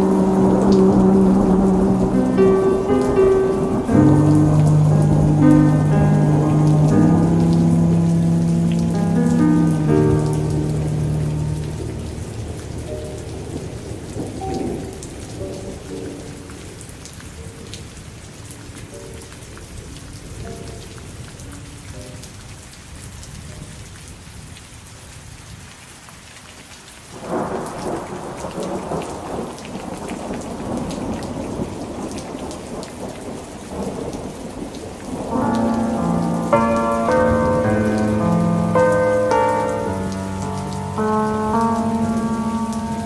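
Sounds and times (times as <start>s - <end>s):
thunder rolling: 0.0s - 16.3s, 27.2s - 43.0s
steady rain falling: 0.0s - 43.0s.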